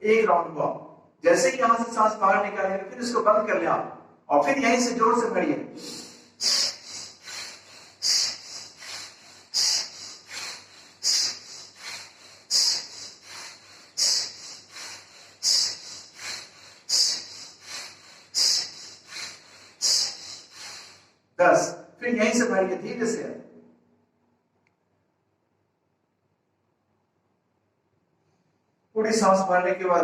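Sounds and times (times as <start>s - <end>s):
man breathing forcefully through nose: 5.8s - 21.3s.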